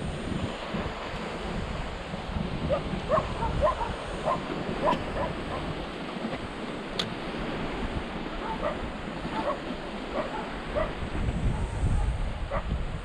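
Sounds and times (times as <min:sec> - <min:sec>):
surf: 0:00.0 - 0:13.0
wind: 0:00.0 - 0:13.0
sharp click: 0:07.0 - 0:07.2.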